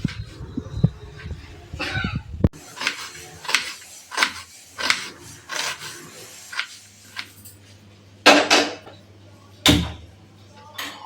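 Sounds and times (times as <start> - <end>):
rubbing or scraping strokes: 2.6 - 7.6.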